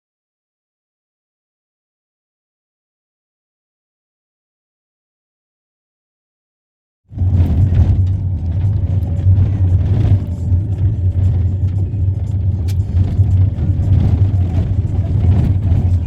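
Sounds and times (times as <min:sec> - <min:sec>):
car engine and road rumble: 0:07.1 - 0:16.0
small knocks and rattles: 0:07.2 - 0:16.0.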